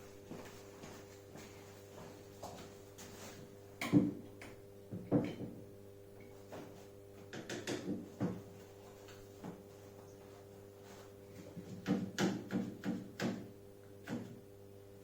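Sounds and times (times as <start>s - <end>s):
clamps knocking on wooden frame: 3.8s - 5.7s, 7.2s - 8.5s, 11.6s - 14.4s.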